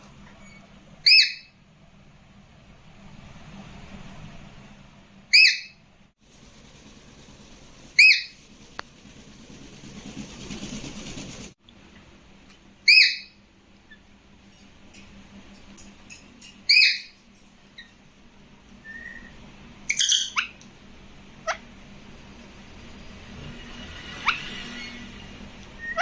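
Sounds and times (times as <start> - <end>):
parrot whistling: 8.0 - 8.3, 12.9 - 13.4
parrot calls: 12.9 - 13.4, 21.4 - 21.6.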